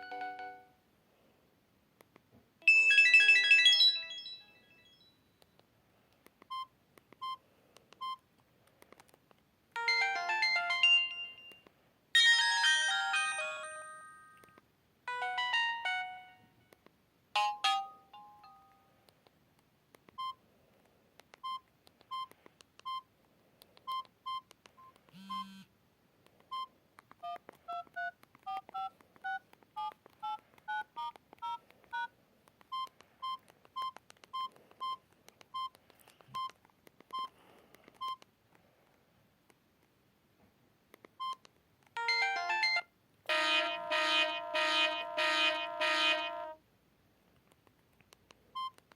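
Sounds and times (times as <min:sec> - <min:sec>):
polyphonic ringtone: 0:00.0 - 0:00.7, 0:02.6 - 0:05.2, 0:09.8 - 0:11.6, 0:12.2 - 0:14.5, 0:15.1 - 0:16.5, 0:17.4 - 0:18.8, 0:27.2 - 0:32.1, 0:42.0 - 0:46.4
mobile phone beeps: 0:06.5 - 0:07.4, 0:08.0 - 0:08.2, 0:20.2 - 0:20.4, 0:21.4 - 0:23.1, 0:23.8 - 0:25.7, 0:26.5 - 0:32.1, 0:32.7 - 0:37.4, 0:38.0 - 0:38.2, 0:41.2 - 0:46.4, 0:48.6 - 0:48.8.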